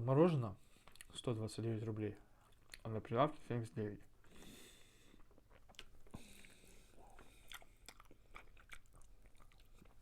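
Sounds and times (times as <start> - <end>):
person chewing: 0.7 - 1.2, 2.3 - 2.9, 4.2 - 10.0.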